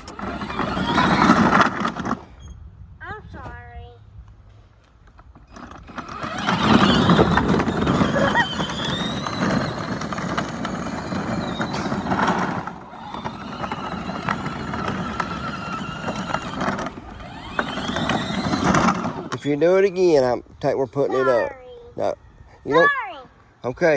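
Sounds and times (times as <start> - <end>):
tyre noise: 0.0 - 2.6, 5.2 - 20.0
motor whining: 0.0 - 2.7, 5.2 - 20.3.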